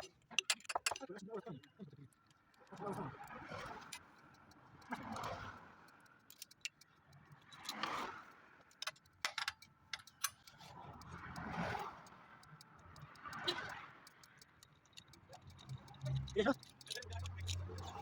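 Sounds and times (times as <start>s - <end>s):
hand tools clinking: 0.0s - 1.2s, 6.3s - 6.8s, 8.7s - 10.6s, 13.3s - 18.0s.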